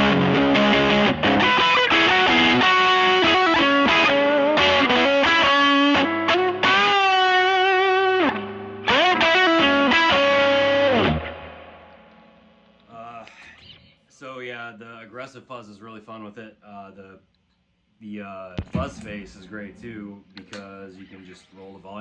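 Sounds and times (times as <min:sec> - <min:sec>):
distorted electric guitar lead: 0:00.0 - 0:11.8.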